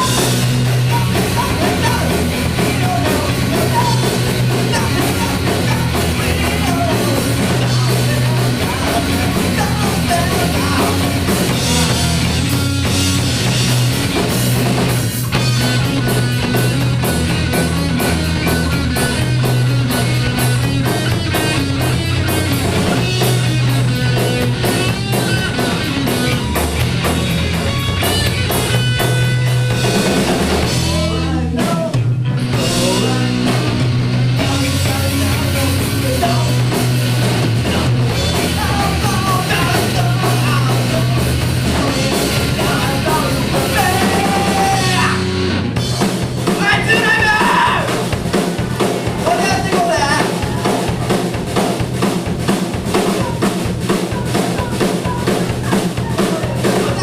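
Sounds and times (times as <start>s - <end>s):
person singing: 0.0s - 12.3s, 30.8s - 37.0s, 37.6s - 45.3s, 53.0s - 57.0s
live rock band playing: 0.0s - 57.0s.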